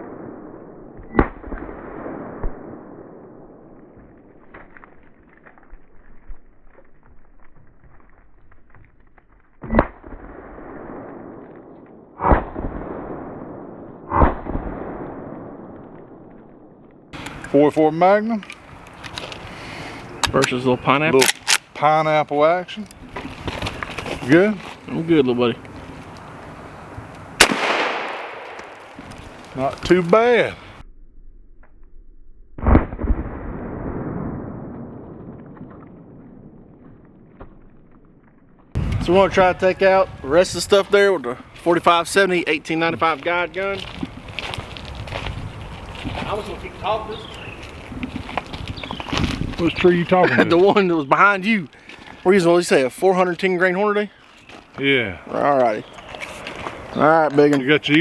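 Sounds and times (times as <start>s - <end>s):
gunshots with rolling echo: 0.0s - 4.3s, 9.7s - 17.1s, 27.4s - 30.8s, 32.6s - 37.3s
loud blast: 12.1s - 16.3s, 27.4s - 29.0s, 32.5s - 36.8s.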